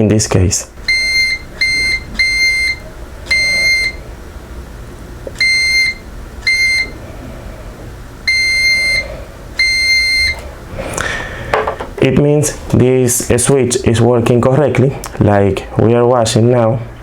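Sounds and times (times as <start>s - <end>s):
multimeter buzzer beeping: 0.8s - 4.0s, 5.2s - 7.0s, 8.2s - 10.4s.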